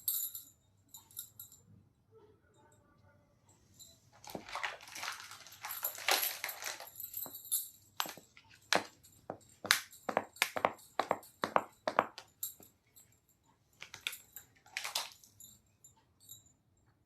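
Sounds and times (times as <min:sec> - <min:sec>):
plastic packaging crinkling: 0:04.2 - 0:07.2, 0:13.9 - 0:15.2.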